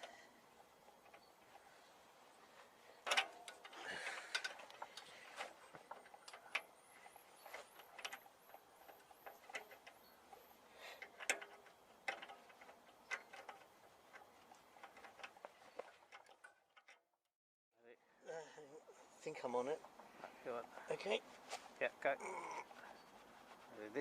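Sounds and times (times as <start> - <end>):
light metallic clicks and taps: 3.0 - 10.4, 11.0 - 17.0.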